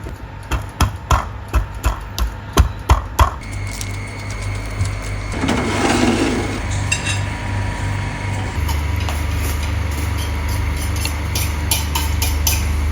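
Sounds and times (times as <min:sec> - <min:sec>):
utensils clinking against dishes: 0:03.4 - 0:07.3, 0:08.6 - 0:12.9.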